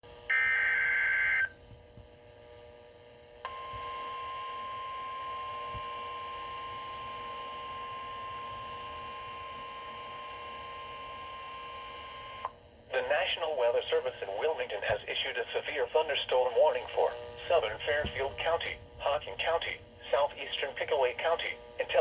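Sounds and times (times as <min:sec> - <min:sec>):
radio hiss and hum: 0:00.1 - 0:02.5, 0:03.5 - 0:22.0
steady single-pitch alert tone: 0:00.3 - 0:01.6.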